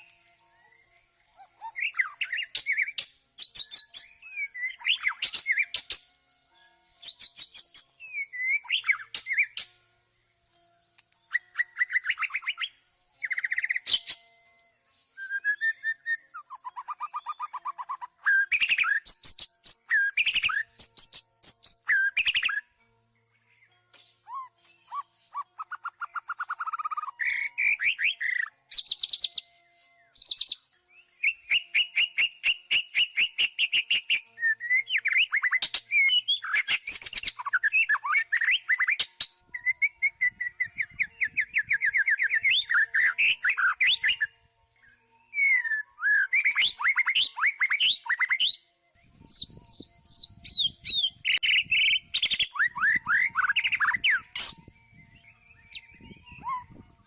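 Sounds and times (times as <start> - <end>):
bird singing trills and whistles: 0.0 - 57.0.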